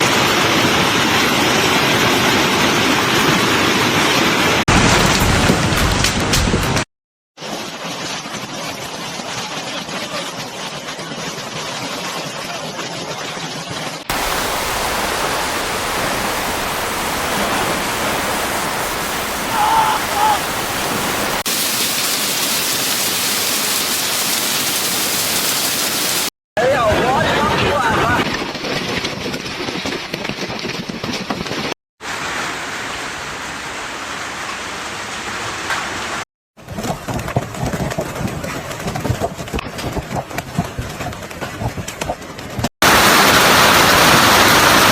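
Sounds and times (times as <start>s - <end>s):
heavy rain downpour: 0.0s - 6.8s, 7.4s - 28.2s, 32.0s - 36.2s, 42.8s - 44.9s
wind: 0.0s - 6.8s, 7.4s - 44.9s
hailstones striking: 4.2s - 6.8s, 14.1s - 26.3s.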